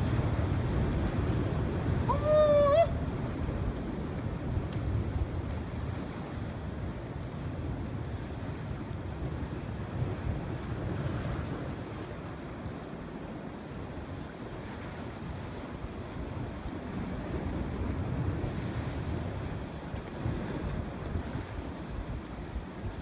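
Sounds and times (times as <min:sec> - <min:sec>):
water rushing: 0:02.0 - 0:03.0.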